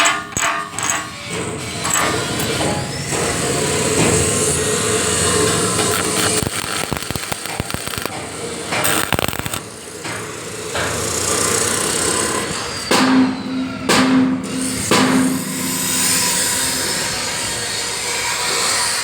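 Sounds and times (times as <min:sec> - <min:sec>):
welding arc crackling: 0:01.8 - 0:12.6.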